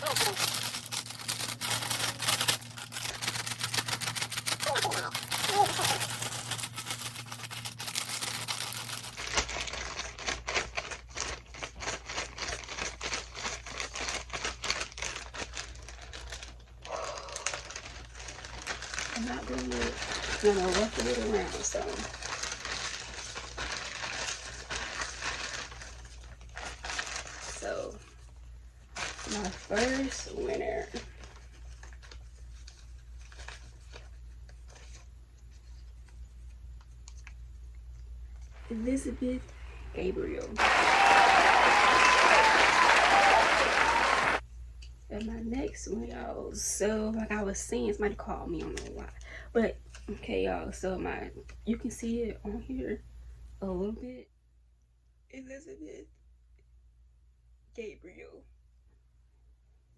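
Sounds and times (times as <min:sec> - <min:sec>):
paper rustling and crinkling: 0:00.0 - 0:28.3, 0:28.9 - 0:37.4, 0:40.6 - 0:44.0.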